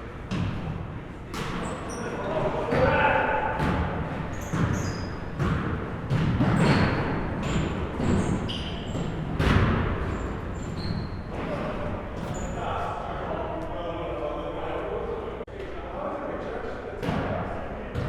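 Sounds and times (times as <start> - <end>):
sneaker squeaks: 1.3 - 13.0
basketball bouncing on court: 3.6 - 11.1.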